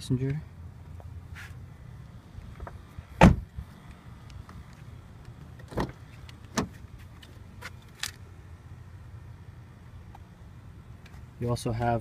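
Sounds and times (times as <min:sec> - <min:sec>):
steady low hum: 0:00.0 - 0:12.0
car door thump: 0:02.6 - 0:03.5.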